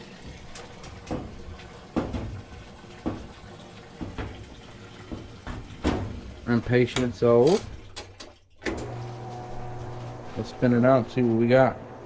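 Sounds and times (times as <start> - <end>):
water running into washing machine: 0.0 - 9.7
short knocks: 0.9 - 6.4.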